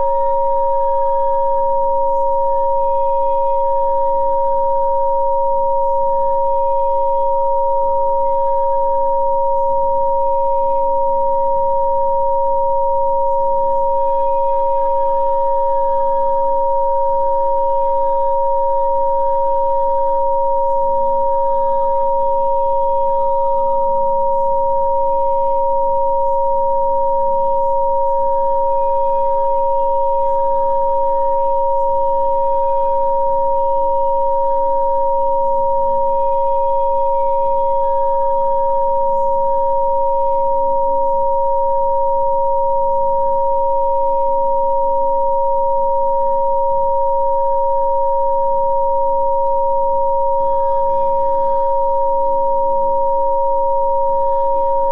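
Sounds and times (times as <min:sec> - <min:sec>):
steady pure electronic tones: 0:00.0 - 0:54.9.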